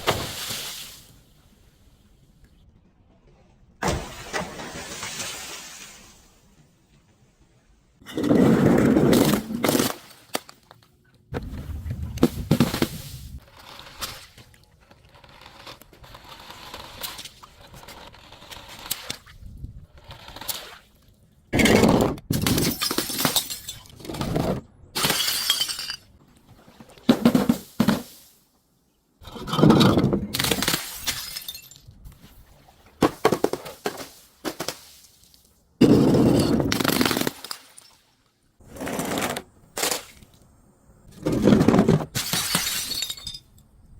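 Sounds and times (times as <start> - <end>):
glass breaking and crunching: 30.3 - 31.9, 42.1 - 43.6.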